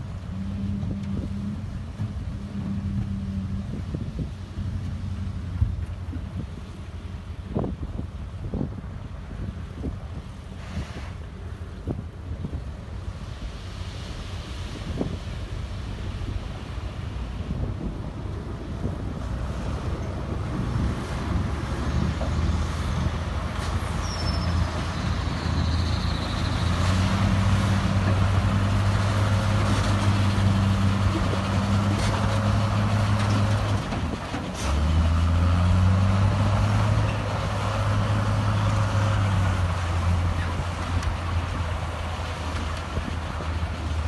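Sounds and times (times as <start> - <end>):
heavy diesel engine under load: 0.0 - 44.0
short high squeal: 23.9 - 26.7.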